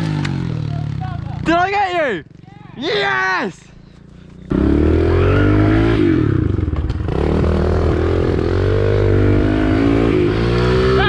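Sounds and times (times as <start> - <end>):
pit bike engine revving: 0.0 - 1.5, 4.4 - 11.0.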